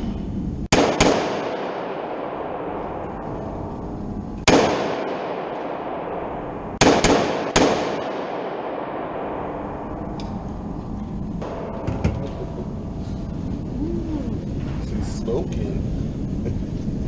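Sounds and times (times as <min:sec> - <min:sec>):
gunshots with long echo: 0:00.7 - 0:13.5.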